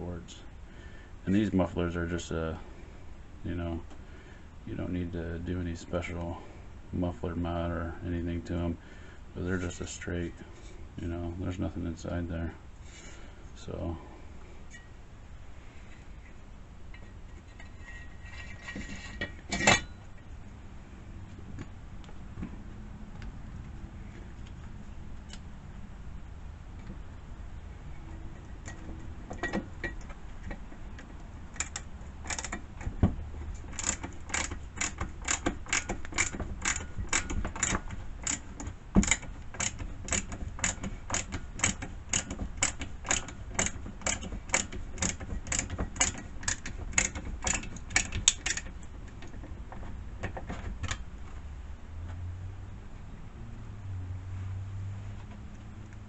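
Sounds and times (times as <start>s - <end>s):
ratchet wrench clicking: 31.5s - 32.6s, 33.7s - 48.7s.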